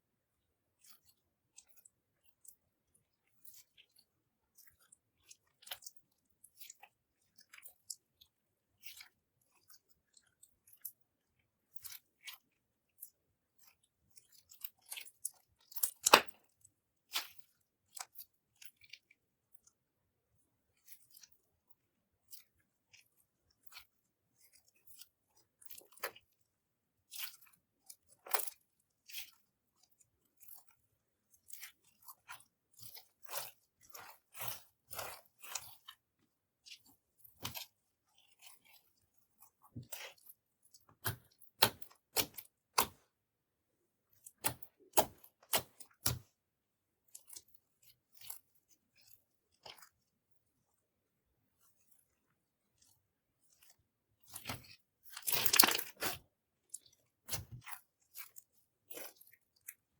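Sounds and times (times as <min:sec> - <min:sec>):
slime squishing with sticky clicks: 0:13.0 - 0:19.1, 0:39.4 - 0:43.0, 0:44.1 - 0:46.3, 0:54.3 - 0:59.8.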